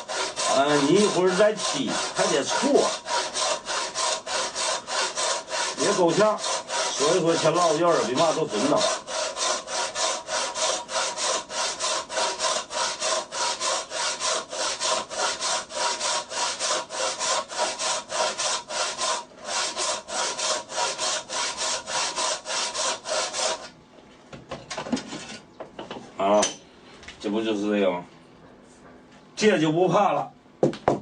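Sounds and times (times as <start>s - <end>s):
hand saw cutting wood: 0.0s - 23.7s.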